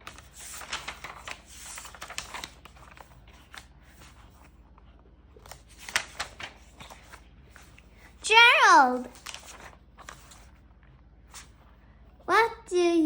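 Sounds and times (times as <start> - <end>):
paper rustling: 0.0 - 4.6, 5.4 - 10.6, 11.2 - 11.7
book pages turning: 0.0 - 8.2, 8.8 - 11.7.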